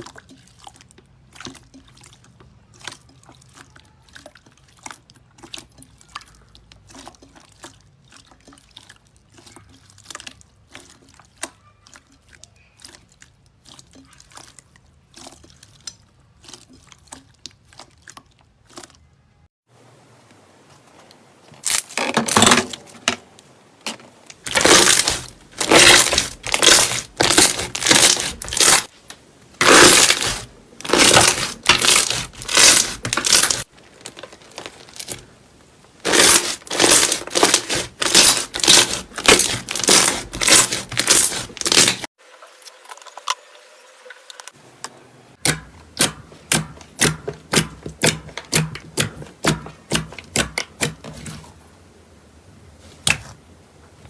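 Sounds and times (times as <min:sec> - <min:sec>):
slime squishing and popping: 0:24.4 - 0:28.9, 0:29.6 - 0:35.3, 0:36.0 - 0:42.1, 0:45.4 - 0:50.9.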